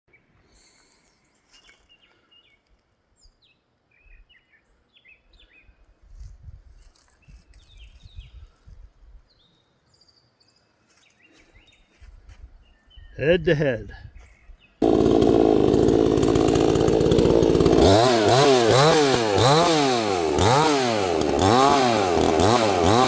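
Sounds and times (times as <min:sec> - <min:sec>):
small birds chirping: 0:00.1 - 0:13.4, 0:14.0 - 0:14.8.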